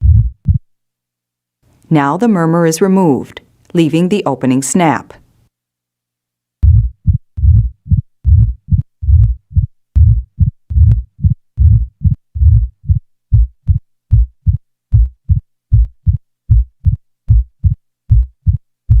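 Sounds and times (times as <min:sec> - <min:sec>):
heartbeat: 0:00.0 - 0:00.7, 0:06.6 - 0:19.0.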